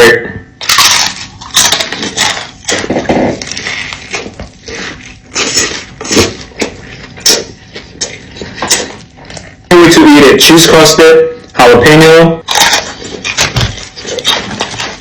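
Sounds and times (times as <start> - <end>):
chewing crunches and clicks: 0.6 - 9.6, 12.5 - 15.0.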